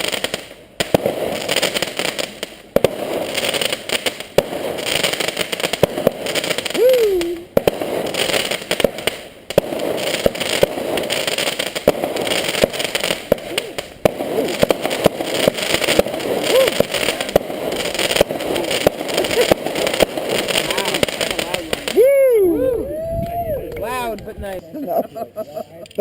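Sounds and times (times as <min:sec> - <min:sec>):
fireworks bangs and pops: 0:00.0 - 0:22.4.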